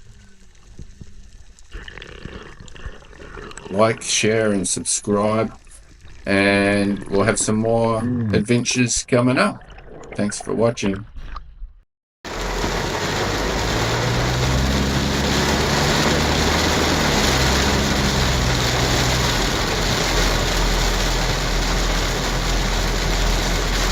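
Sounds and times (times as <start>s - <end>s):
vehicle engine running: 12.3s - 23.9s
wind and road noise: 12.3s - 23.9s.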